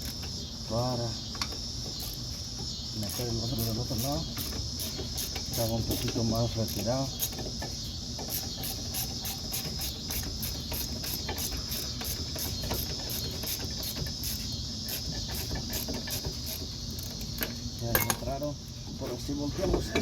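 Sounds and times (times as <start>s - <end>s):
crickets chirring: 0.0s - 20.0s
ratchet clicking: 3.0s - 17.6s.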